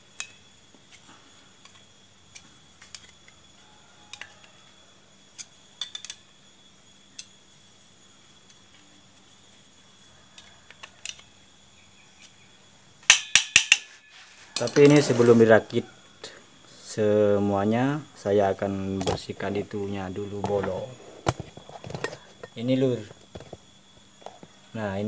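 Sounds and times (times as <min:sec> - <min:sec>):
sharp metal clacks: 0:13.1 - 0:13.9.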